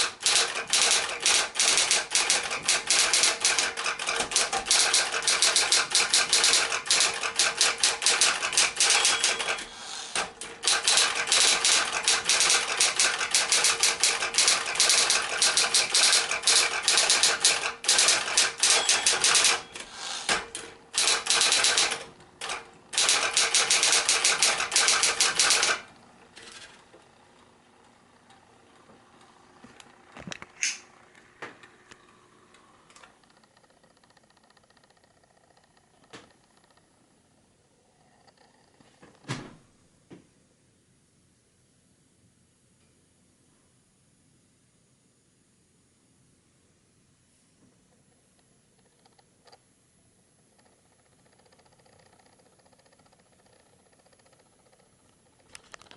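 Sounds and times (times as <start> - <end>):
electric typewriter typing fast: 0.0 - 26.8.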